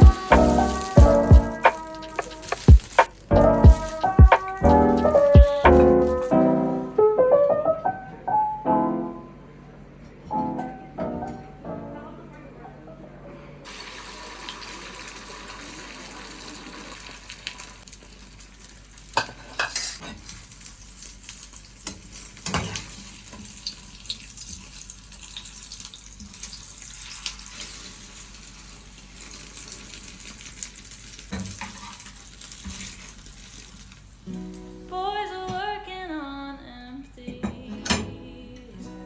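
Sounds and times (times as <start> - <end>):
sizzling hiss: 0.0 - 6.4.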